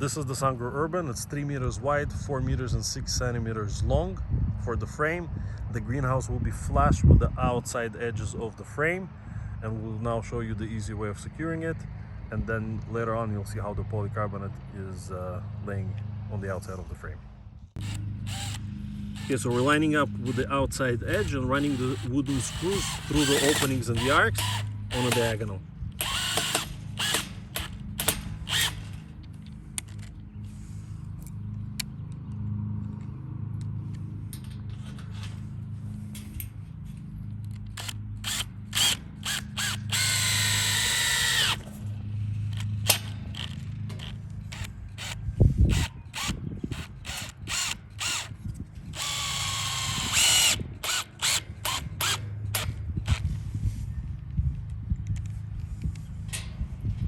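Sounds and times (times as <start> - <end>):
steady low hum: 10.6 - 57.0
cordless drill driving screws: 17.8 - 29.0, 37.6 - 41.8, 42.5 - 53.2.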